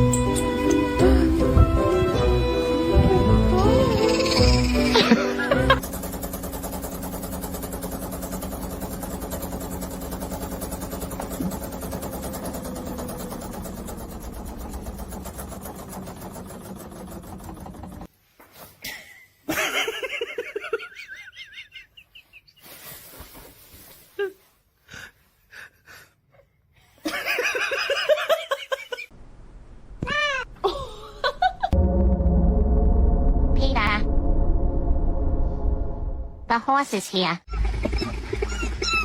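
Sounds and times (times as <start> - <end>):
mechanical hum: 29.1 - 30.9.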